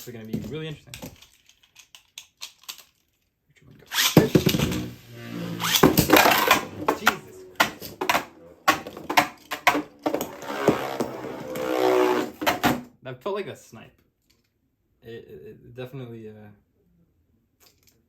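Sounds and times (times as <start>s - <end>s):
spinning tops launched: 3.9s - 12.8s
spinning tops whirring: 3.9s - 12.8s.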